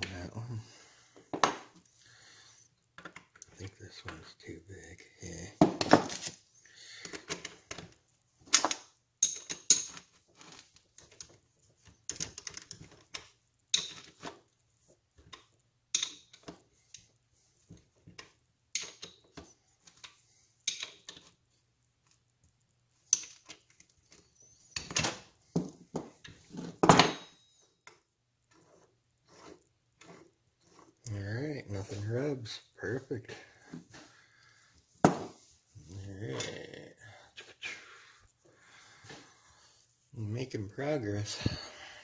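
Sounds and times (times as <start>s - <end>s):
metal parts and tools clinking: 7.1s - 11.4s.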